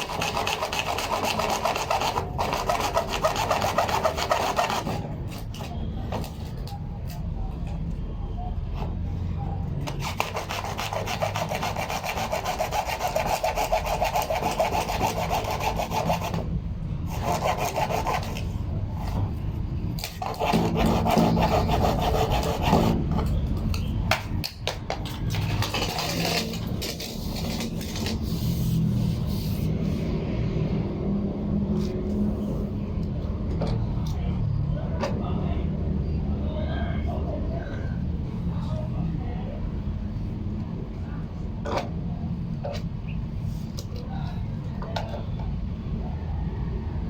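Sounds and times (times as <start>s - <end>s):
hand saw rasping: 0.0s - 5.0s, 10.0s - 16.5s, 17.1s - 18.4s, 20.0s - 23.0s.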